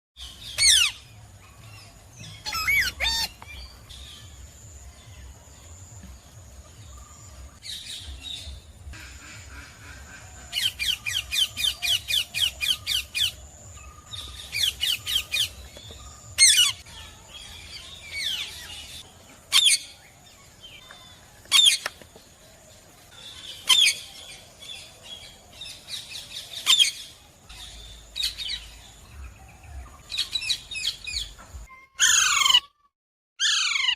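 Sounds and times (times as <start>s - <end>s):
parrots squawking: 2.4s - 3.7s, 32.0s - 32.8s, 33.4s - 33.9s.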